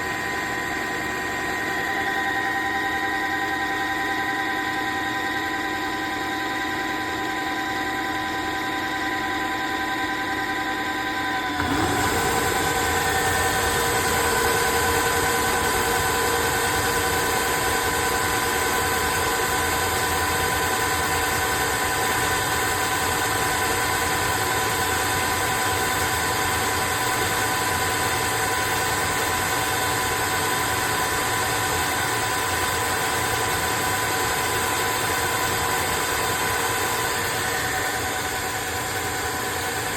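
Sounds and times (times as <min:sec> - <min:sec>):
vacuum motor whining: 0:00.0 - 0:39.9.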